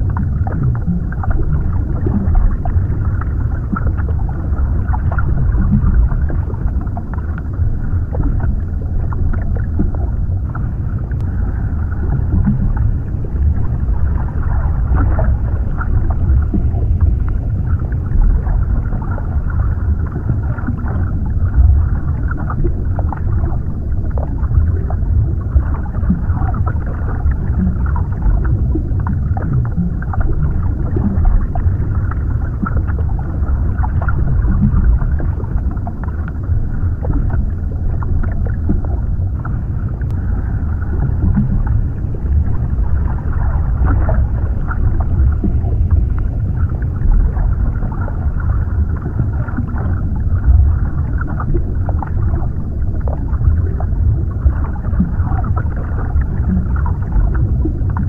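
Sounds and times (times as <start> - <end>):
muffled underwater rumble: 0.0 - 58.0.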